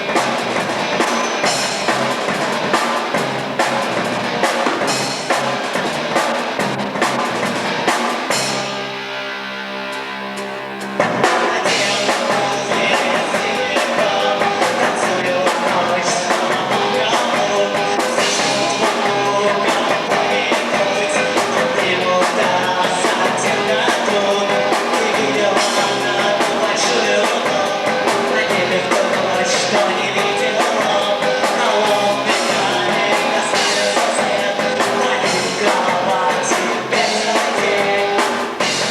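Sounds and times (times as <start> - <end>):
drum kit beat: 0.0 - 8.9, 10.8 - 38.9
rock band playing live: 0.0 - 38.9
person singing: 11.1 - 38.9.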